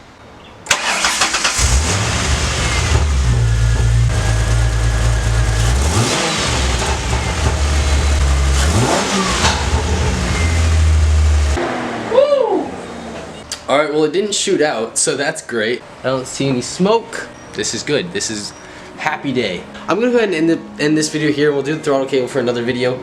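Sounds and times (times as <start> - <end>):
car engine starting and revving: 0.7 - 13.4.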